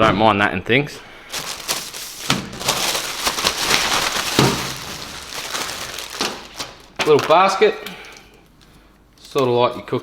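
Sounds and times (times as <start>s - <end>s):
packaging rustling and crinkling: 1.3s - 8.2s.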